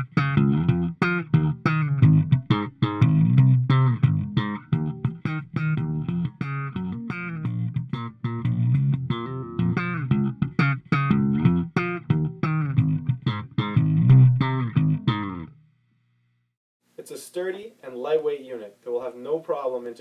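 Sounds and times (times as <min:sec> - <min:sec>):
electric bass plucked notes: 0:00.0 - 0:15.6.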